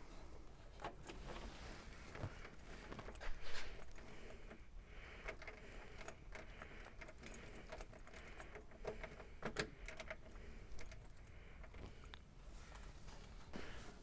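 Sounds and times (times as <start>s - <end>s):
keys jingling: 2.0s - 12.8s.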